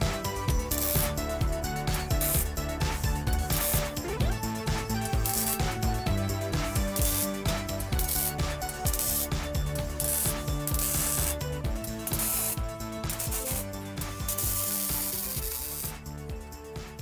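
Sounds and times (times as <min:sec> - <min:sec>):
background music with bass: 0:00.0 - 0:17.0
clicking ratchet-like rhythm: 0:00.0 - 0:17.0.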